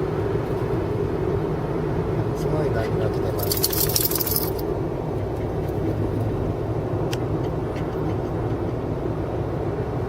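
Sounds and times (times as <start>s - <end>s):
wind: 0.0s - 10.0s.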